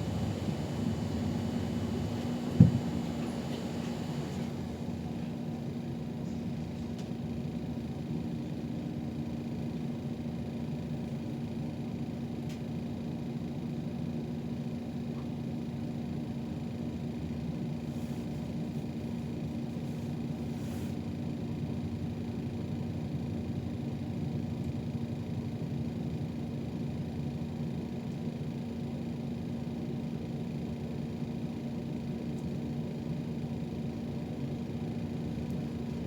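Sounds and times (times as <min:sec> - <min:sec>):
constant hum: 0:00.0 - 0:07.3
bus engine and road rumble: 0:00.0 - 0:08.9, 0:30.6 - 0:36.0.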